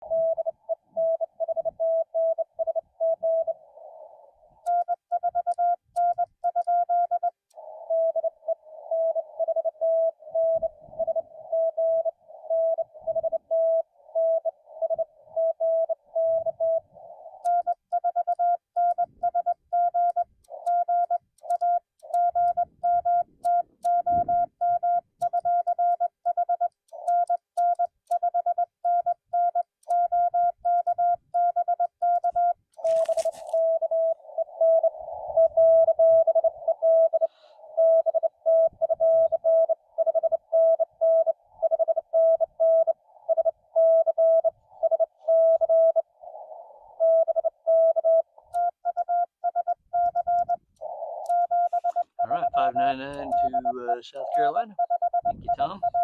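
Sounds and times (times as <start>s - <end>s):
morse code tones: 4.7s - 46.1s, 47.0s - 56.0s
faint clicking: 17.4s - 24.3s, 25.2s - 28.4s, 48.4s - 52.0s.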